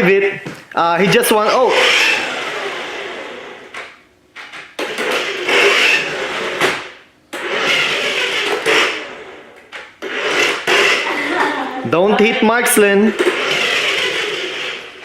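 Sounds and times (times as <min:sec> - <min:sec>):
toy car motor whirring: 0:01.5 - 0:03.7, 0:04.8 - 0:11.3, 0:13.1 - 0:15.0.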